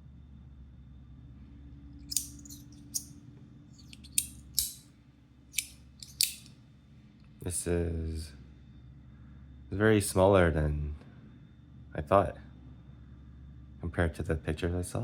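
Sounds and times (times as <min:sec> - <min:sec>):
fidget slider clicks: 0:02.1 - 0:03.0, 0:03.8 - 0:04.8, 0:05.6 - 0:06.5.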